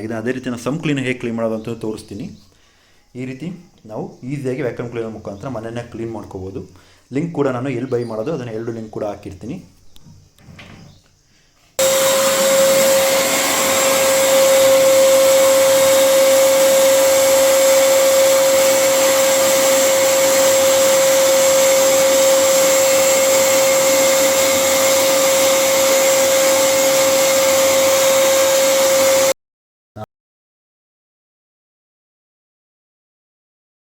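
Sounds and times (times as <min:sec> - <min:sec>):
vacuum cleaner whining: 0:11.8 - 0:29.4.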